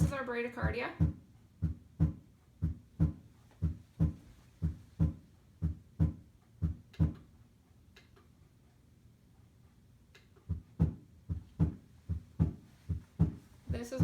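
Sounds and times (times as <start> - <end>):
slow heartbeat lub-dub: 0.0 - 7.3, 10.4 - 14.0.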